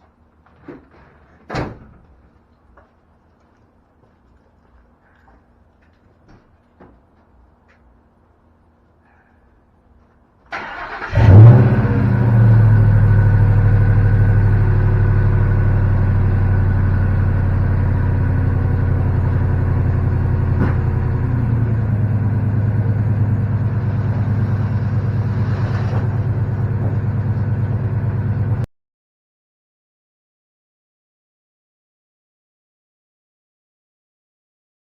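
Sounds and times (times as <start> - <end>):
truck engine revving and idling: 10.7 - 28.7.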